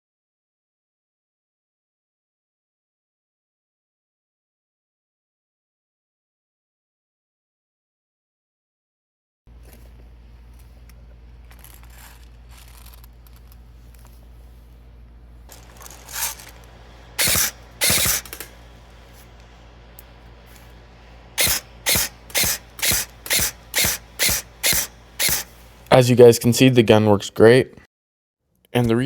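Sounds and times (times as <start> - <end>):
handling noise: 9.5 - 26.0
airsoft rifle firing shots: 17.2 - 18.6, 21.4 - 25.5.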